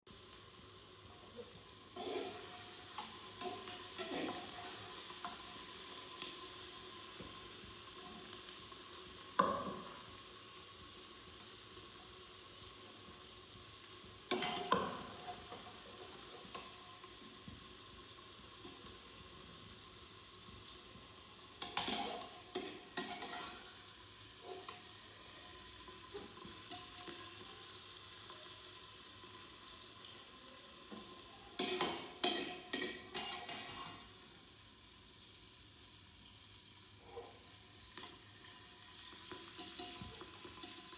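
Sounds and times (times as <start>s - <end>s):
food sizzling in a pan: 0.0s - 40.9s
spoon knocking and scraping pan: 2.0s - 5.8s, 9.3s - 10.2s, 14.3s - 17.7s, 21.6s - 23.8s, 30.9s - 34.2s, 39.3s - 40.9s.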